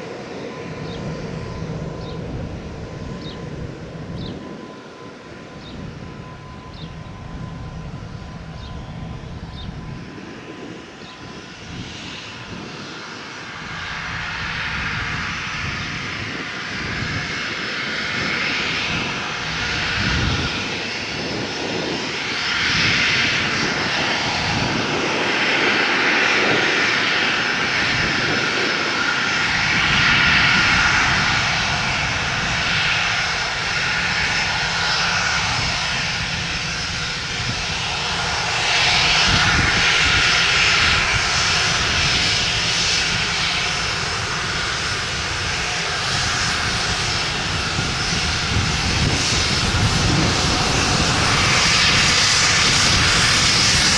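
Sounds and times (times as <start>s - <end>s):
jet engines rushing: 0.0s - 53.9s.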